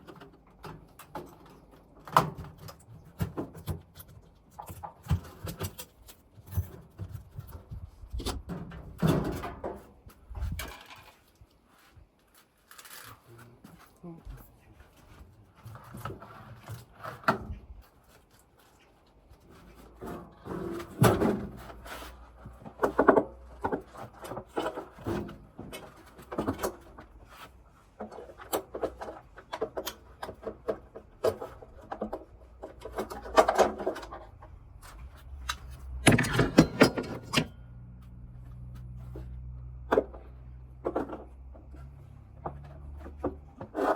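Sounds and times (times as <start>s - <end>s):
washing machine parts knocking: 35.5s - 37.6s.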